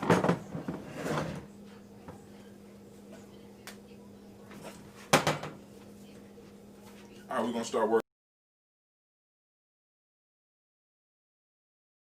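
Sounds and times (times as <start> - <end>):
rustling scrape: 0.7 - 1.5.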